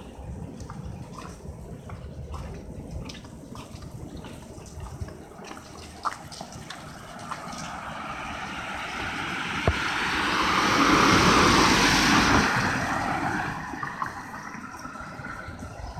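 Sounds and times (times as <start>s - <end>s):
car tyres hissing on wet road: 7.2s - 14.1s.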